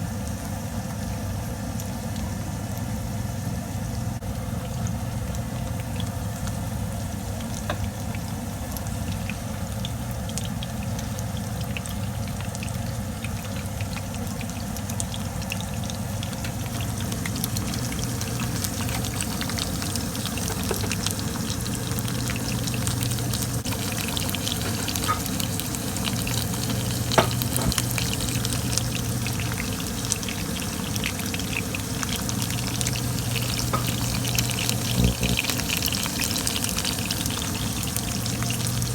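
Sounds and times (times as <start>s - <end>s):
deep-frying sizzle with pops: 0.0s - 38.9s
steady low hum: 15.4s - 38.9s.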